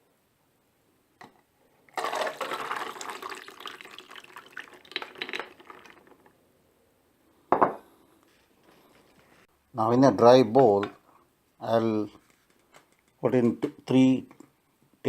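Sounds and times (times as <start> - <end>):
water pouring off peanuts: 1.9 - 6.4.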